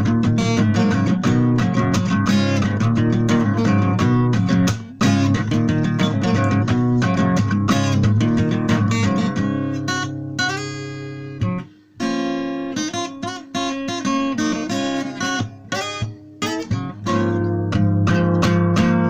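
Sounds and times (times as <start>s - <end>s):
acoustic guitar chords and notes: 0.0s - 19.0s.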